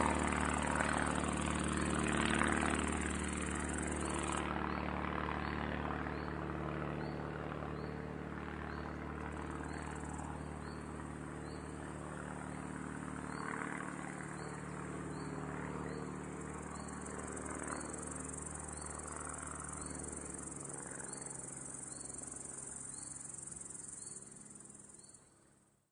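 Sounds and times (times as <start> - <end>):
propeller plane droning: 0.0 - 25.8
crickets chirping: 16.8 - 25.2.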